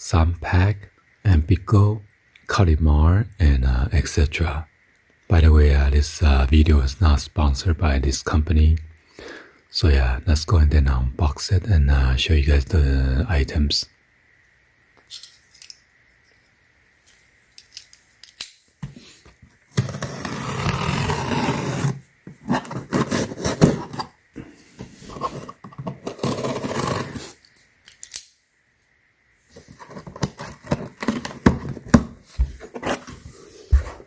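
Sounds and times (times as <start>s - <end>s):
packaging rustling and tearing: 19.8s - 24.2s, 25.1s - 27.4s, 29.7s - 34.0s.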